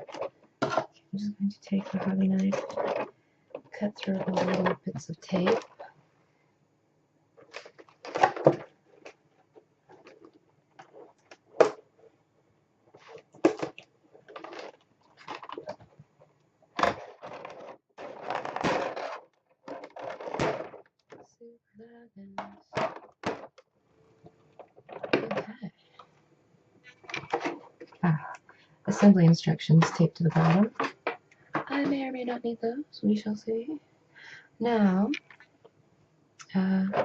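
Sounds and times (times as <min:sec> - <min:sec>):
packaging rustles and scrapes: 0:01.7 - 0:05.9, 0:12.9 - 0:16.0, 0:16.8 - 0:21.3.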